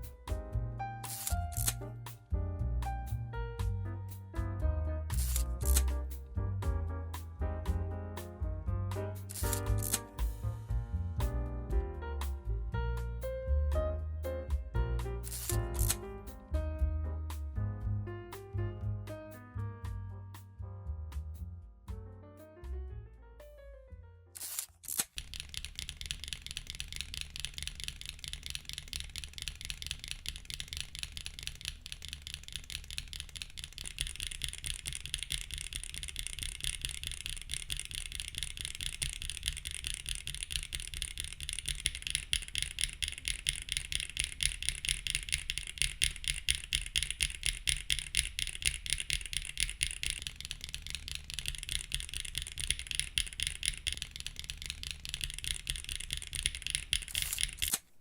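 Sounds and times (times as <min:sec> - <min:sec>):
mechanical keyboard typing: 0:01.0 - 0:02.2, 0:05.1 - 0:06.2, 0:09.2 - 0:10.4, 0:15.2 - 0:16.4, 0:24.4 - 0:58.0.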